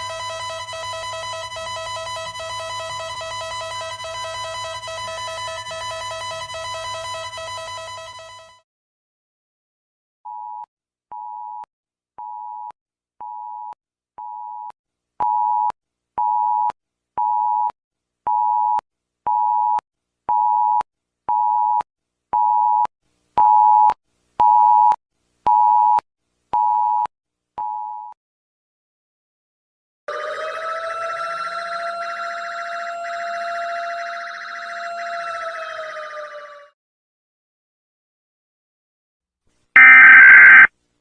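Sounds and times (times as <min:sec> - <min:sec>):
alarm tone short beeps: 0:39.8 - 0:40.7.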